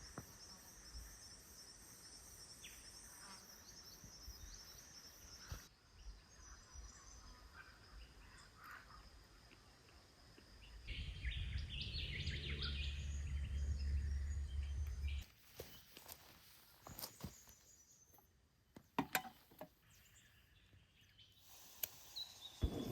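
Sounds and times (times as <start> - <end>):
birds chirping: 10.6 - 16.0
low rumble: 10.9 - 15.2.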